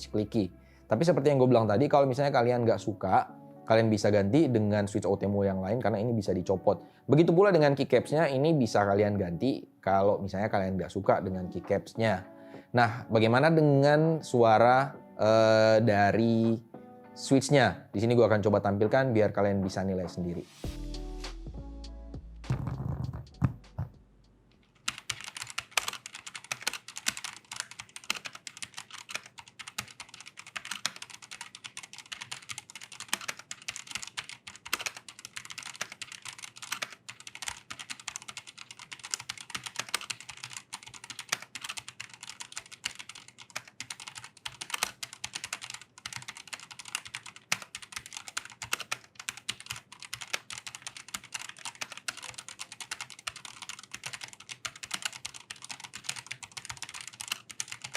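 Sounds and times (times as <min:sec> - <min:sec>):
mechanical keyboard typing: 0:24.8 - 0:57.9.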